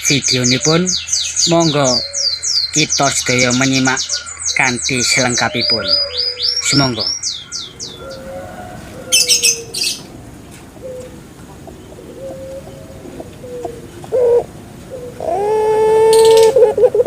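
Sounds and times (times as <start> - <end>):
high chirping: 0.0 - 8.4
dove cooing: 1.7 - 2.6, 4.0 - 17.0.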